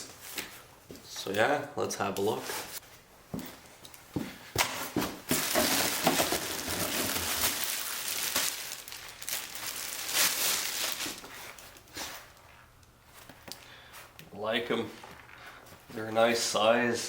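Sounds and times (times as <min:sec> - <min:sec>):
packaging crinkling and rustling: 0:05.3 - 0:12.5.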